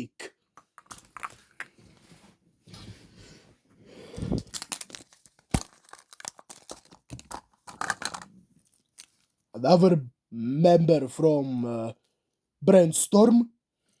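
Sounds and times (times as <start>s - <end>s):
wrapper tearing and crinkling: 4.2s - 8.3s.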